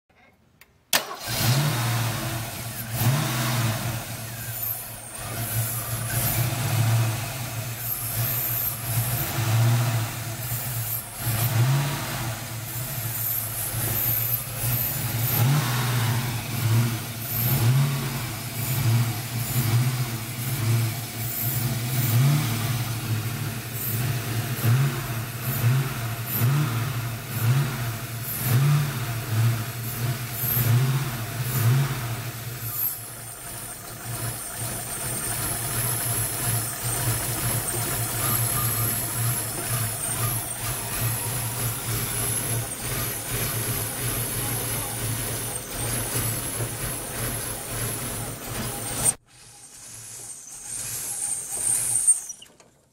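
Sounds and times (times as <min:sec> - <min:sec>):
engine idling roughly: 0:02.1 - 0:49.2.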